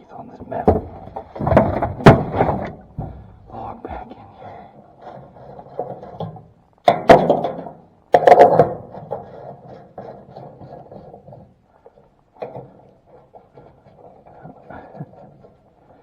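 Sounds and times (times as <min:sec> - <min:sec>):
wood knocking and shuffling: 0:00.0 - 0:04.0
loud wooden thunks: 0:00.4 - 0:03.6, 0:06.8 - 0:08.9.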